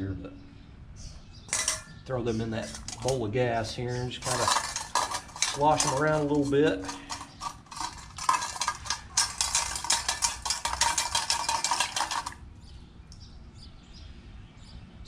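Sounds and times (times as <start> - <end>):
metal parts clinking in a bowl: 1.5 - 12.4
liquid sloshing: 2.6 - 3.2, 4.1 - 12.4.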